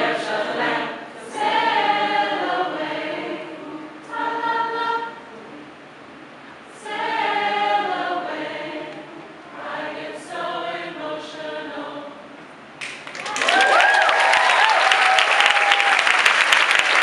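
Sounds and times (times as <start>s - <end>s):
a cappella chorus singing: 0.0s - 5.8s, 6.6s - 12.4s.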